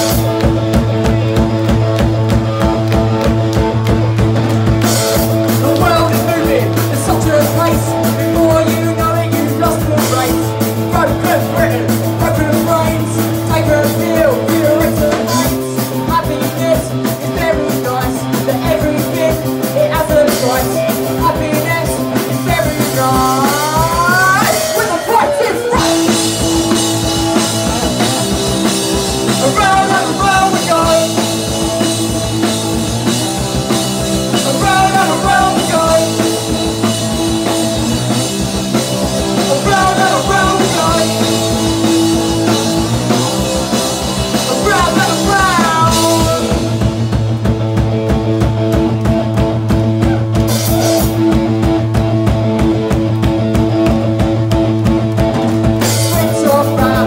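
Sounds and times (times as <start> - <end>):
drum kit: 0.0 - 57.0
loud guitar chords: 0.0 - 57.0
person singing: 5.5 - 27.7, 29.3 - 31.6, 34.2 - 36.8, 39.2 - 46.9, 55.9 - 57.0.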